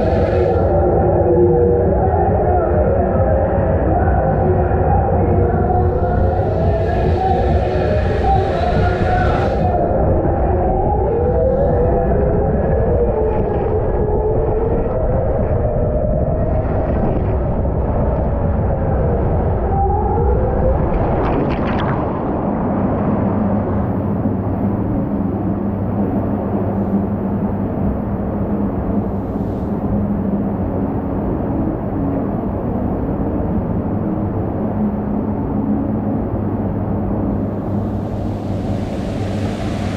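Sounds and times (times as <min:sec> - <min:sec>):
rushing rumble in slide tube: 0:00.0 - 0:35.2, 0:36.8 - 0:39.9
racing car engine whine: 0:04.7 - 0:12.4, 0:36.9 - 0:39.9
water rushing through tube: 0:20.7 - 0:22.7.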